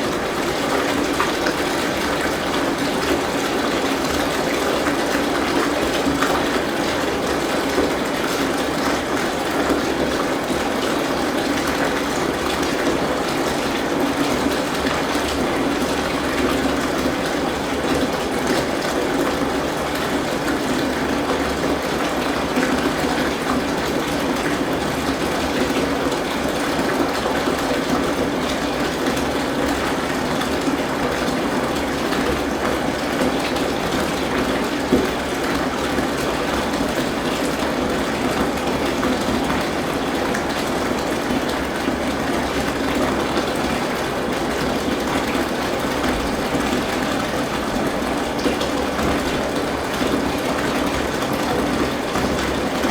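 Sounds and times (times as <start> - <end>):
tap water gushing into bathtub: 0.0 - 52.9.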